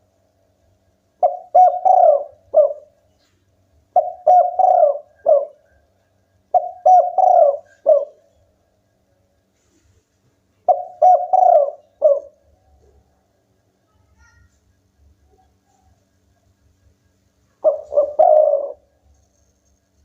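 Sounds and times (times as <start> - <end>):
dove cooing: 1.2 - 3.0, 3.9 - 5.8, 6.4 - 8.3, 10.6 - 13.1, 17.6 - 19.4.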